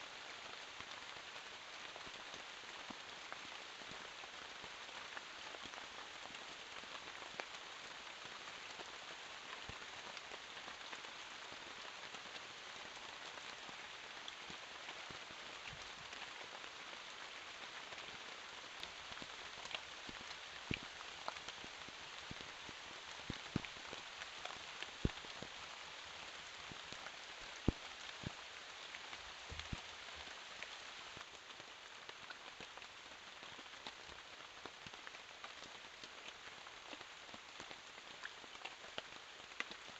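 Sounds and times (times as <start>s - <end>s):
raindrops striking close by: 0.0s - 39.9s
steady rain falling: 0.0s - 39.9s.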